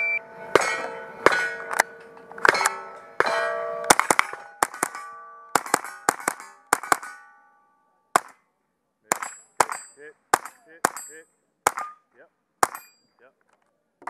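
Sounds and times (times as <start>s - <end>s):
steel plate ringing: 0.0s - 8.3s, 9.1s - 13.2s
gunshots: 2.4s - 7.2s, 8.1s - 8.4s, 9.1s - 11.1s.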